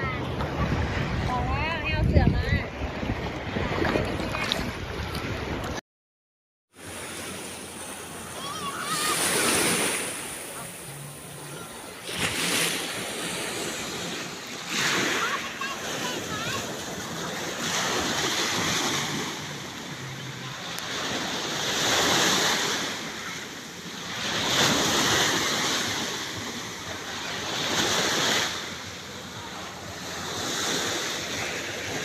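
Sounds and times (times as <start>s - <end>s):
wind on microphone: 0.0s - 5.8s
sea waves washing in: 6.7s - 32.0s.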